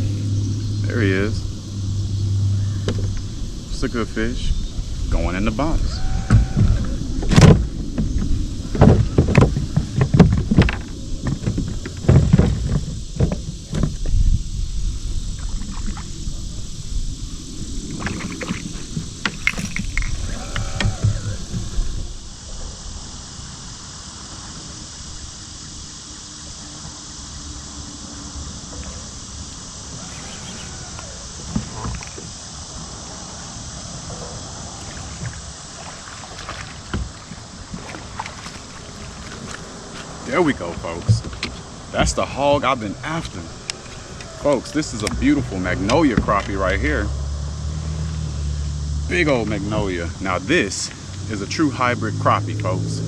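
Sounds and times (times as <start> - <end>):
water lapping around kayak: 0.0 - 53.0
wind rumble on microphone: 0.0 - 53.0
gear knocking on kayak: 6.3 - 14.4.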